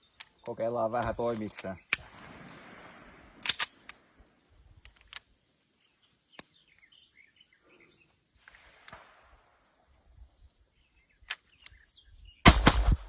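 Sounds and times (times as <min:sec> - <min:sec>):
faint bird chirps: 0:05.4 - 0:08.4, 0:09.6 - 0:12.5.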